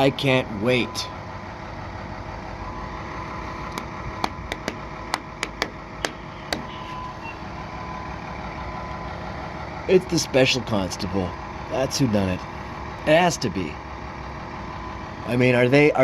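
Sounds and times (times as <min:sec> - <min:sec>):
fire truck engine idling: 0:00.0 - 0:16.0
sharp irregular clicks: 0:03.7 - 0:06.7.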